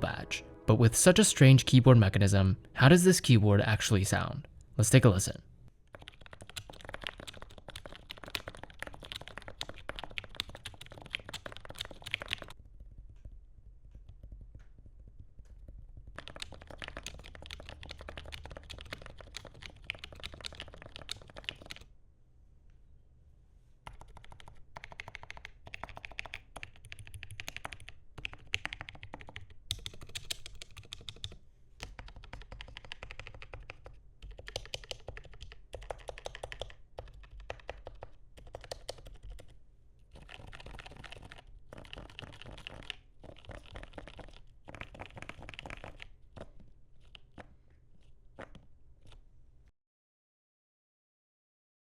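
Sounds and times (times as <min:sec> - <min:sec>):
mechanical keyboard typing: 0:05.9 - 0:12.6, 0:14.2 - 0:21.9, 0:23.9 - 0:47.4.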